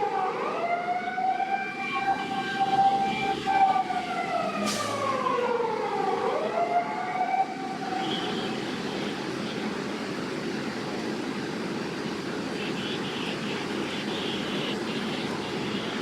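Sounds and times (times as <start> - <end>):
fire engine siren wailing: 0.0 - 9.8, 12.6 - 16.0.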